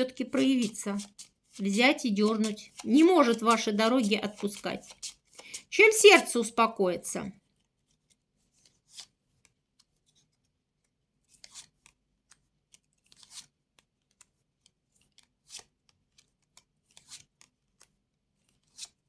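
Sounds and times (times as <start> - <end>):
playing cards swishing: 0.1 - 6.3, 13.0 - 13.5.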